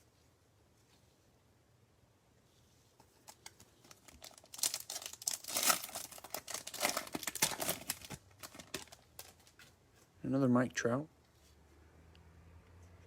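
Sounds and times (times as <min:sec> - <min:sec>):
wrapper crinkling and tearing: 0:03.2 - 0:09.6.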